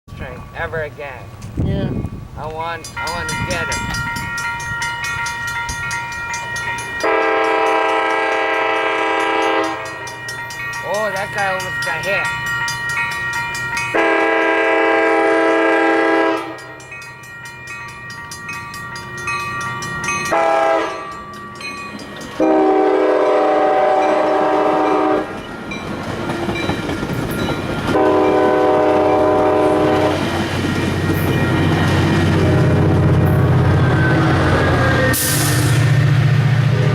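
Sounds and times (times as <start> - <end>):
train rumble and rail clatter: 0.1 - 36.9
train horn blasts: 7.0 - 10.2, 13.9 - 16.8, 20.3 - 21.1, 22.4 - 25.4, 27.9 - 30.3, 32.2 - 35.9, 36.7 - 36.9.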